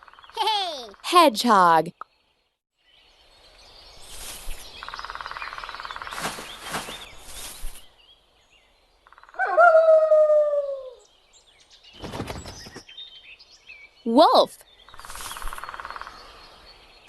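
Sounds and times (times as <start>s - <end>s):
rough fluttering noise: 4.0s - 4.7s, 5.9s - 7.9s, 11.9s - 12.8s, 15.0s - 15.8s
wolf howling: 9.4s - 11.0s.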